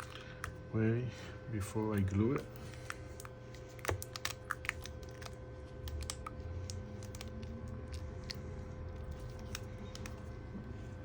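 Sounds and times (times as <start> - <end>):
faint hum: 0.0 - 11.0.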